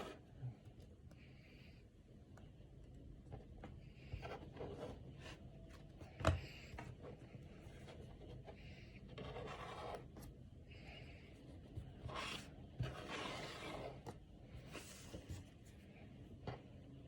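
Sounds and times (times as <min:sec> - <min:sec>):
trading cards sliding and rubbing: 0:12.0 - 0:15.7.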